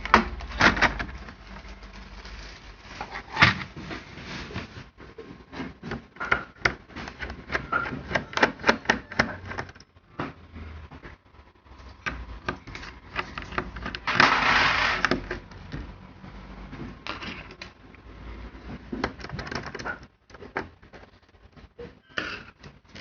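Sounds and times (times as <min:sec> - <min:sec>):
laptop parts clicking: 0:05.9 - 0:09.9
scraping: 0:12.6 - 0:15.4.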